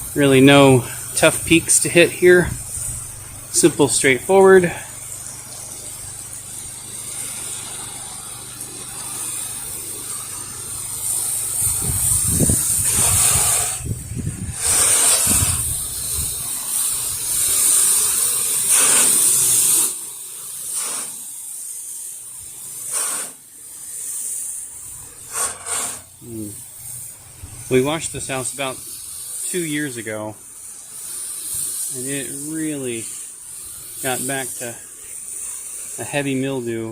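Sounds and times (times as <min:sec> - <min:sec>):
low machine hum: 0:00.0 - 0:14.7, 0:24.6 - 0:29.2
pressure washer spray hissing: 0:00.0 - 0:36.9.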